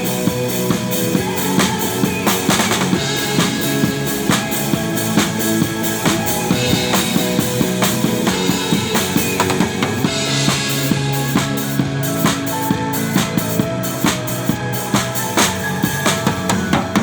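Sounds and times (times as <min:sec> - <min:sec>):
drum kit steady beat: 0:00.0 - 0:17.0
music with sustained tones: 0:00.0 - 0:17.0.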